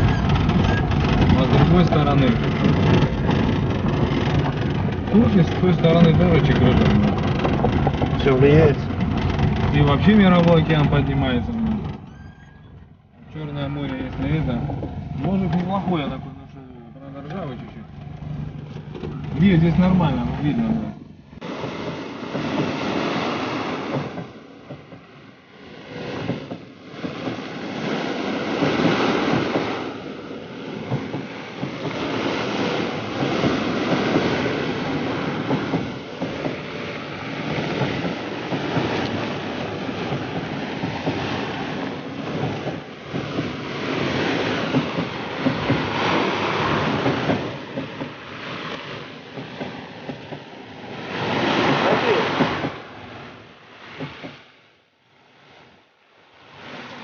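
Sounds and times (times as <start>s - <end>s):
sea waves breaking on shore: 19.3s - 24.7s, 25.5s - 57.0s.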